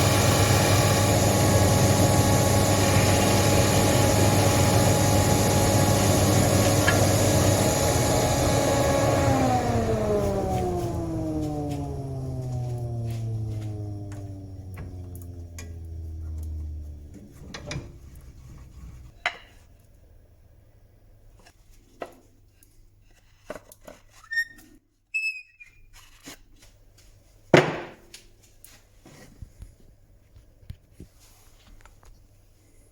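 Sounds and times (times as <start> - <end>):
lathe motor spinning down: 0.0 - 19.1
brief high squeak: 24.2 - 25.9.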